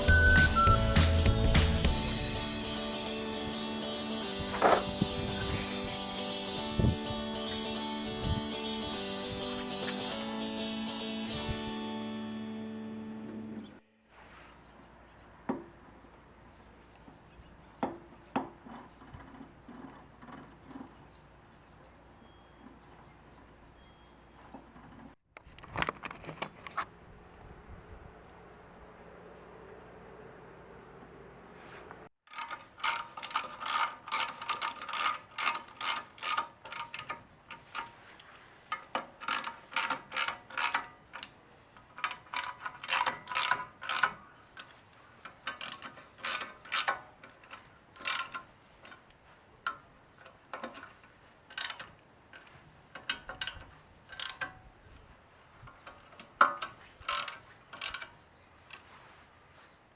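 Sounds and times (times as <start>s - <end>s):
ratchet wrench clicking: 32.3s - 37.9s, 38.7s - 41.3s, 42.0s - 44.7s, 45.3s - 49.0s, 51.5s - 54.5s, 57.0s - 58.1s.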